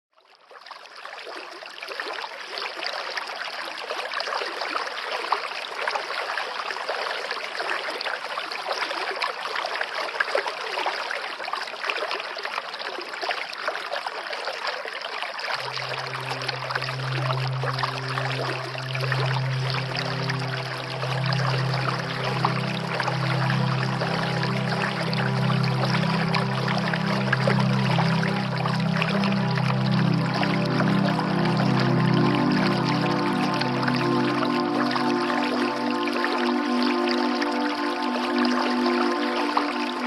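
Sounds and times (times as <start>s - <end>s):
low held musical note: 15.6s - 40.0s.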